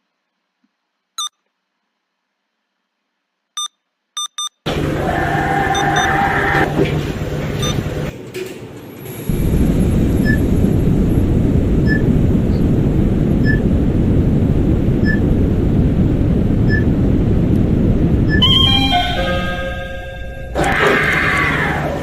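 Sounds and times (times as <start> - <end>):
elevator low rumble: 4.7 - 22.0.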